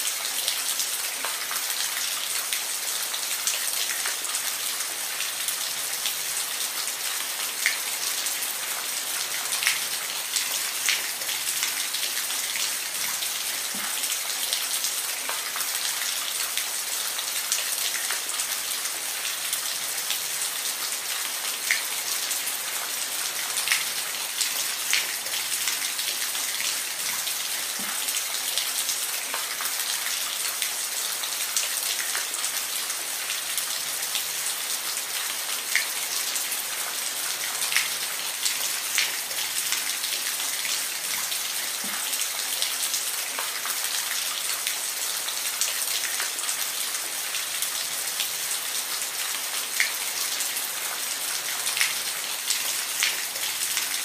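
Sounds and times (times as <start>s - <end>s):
rain falling: 0.0s - 54.0s.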